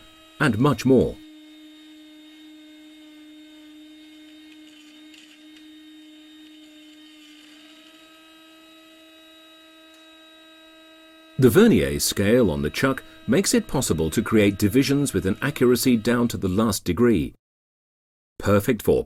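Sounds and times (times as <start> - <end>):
milling machine motor whine: 0.0 - 16.6.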